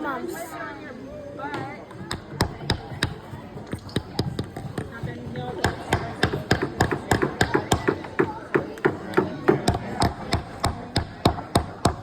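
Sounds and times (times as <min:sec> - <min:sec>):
hammer tapping nails into wood: 0:05.6 - 0:12.0.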